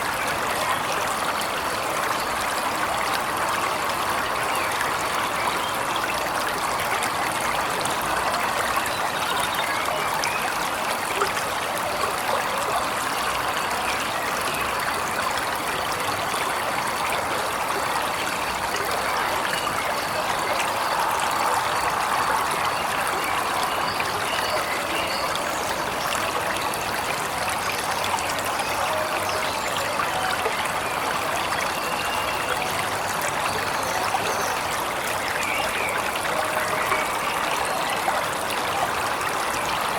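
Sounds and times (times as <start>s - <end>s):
waterfall rushing: 15.4s - 39.9s.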